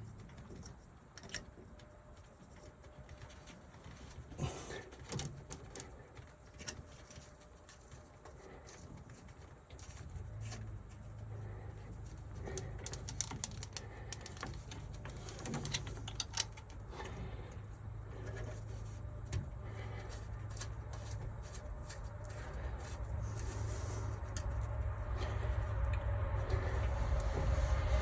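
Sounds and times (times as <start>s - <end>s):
low steady hum: 0.0s - 28.0s
hand tools clicking and tapping: 12.3s - 17.1s.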